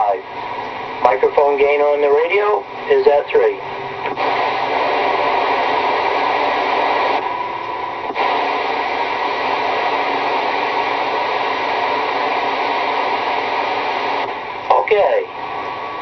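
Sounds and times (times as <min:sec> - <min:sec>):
radio static hiss: 0:00.0 - 0:16.0
radio click: 0:04.0 - 0:14.8.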